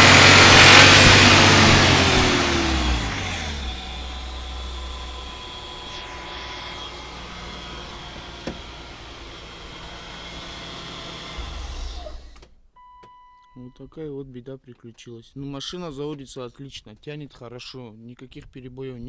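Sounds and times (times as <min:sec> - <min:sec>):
engine running at low revs: 0:00.0 - 0:12.4.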